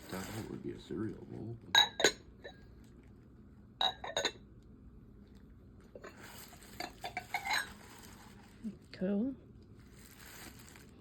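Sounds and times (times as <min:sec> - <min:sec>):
bowls clattering and rustling: 0:01.6 - 0:02.9, 0:03.8 - 0:04.5, 0:05.8 - 0:09.0, 0:09.8 - 0:11.0
ceramic bowls clinking: 0:01.7 - 0:02.6, 0:03.8 - 0:04.5, 0:06.0 - 0:08.2.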